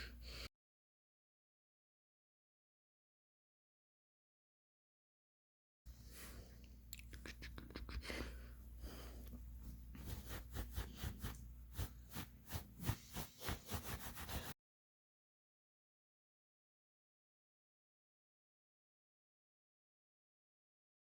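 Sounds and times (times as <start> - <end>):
low steady hum: 5.9 - 14.5
fur being scratched: 10.0 - 14.6.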